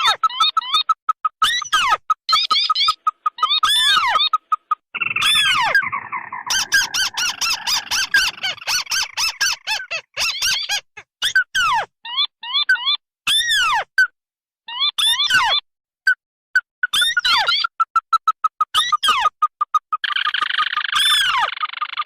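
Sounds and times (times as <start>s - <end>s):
rolling bird trill: 1.5s - 10.8s
crakes calling: 2.4s - 10.6s.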